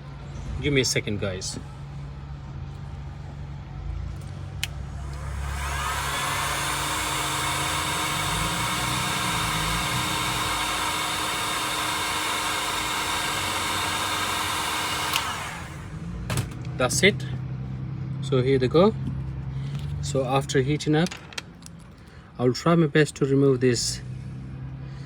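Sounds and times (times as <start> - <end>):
heat gun blowing air: 5.0 - 16.0.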